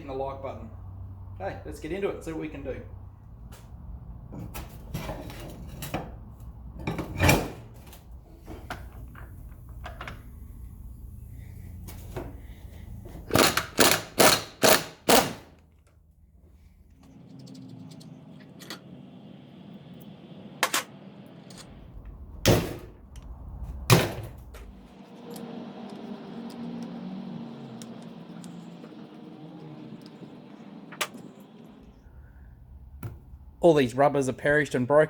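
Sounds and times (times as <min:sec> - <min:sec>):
sharp knocks on engine parts: 0:23.9 - 0:24.6.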